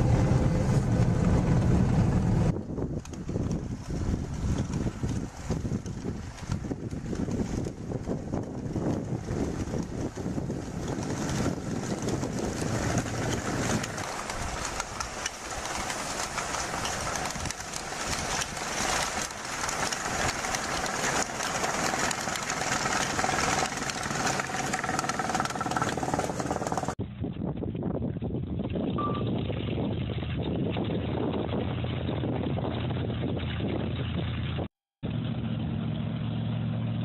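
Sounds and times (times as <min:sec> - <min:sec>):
vehicle engine running: 0:00.0 - 0:27.0.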